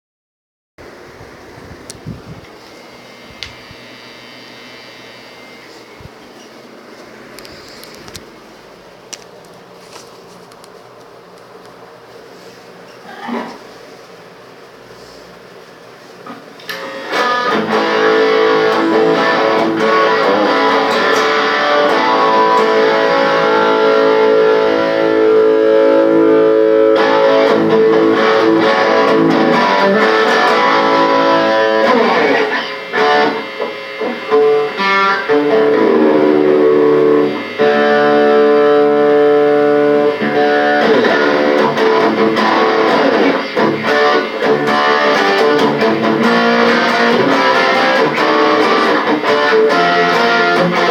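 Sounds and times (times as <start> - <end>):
guitar ringing chords: 16.6 - 50.9.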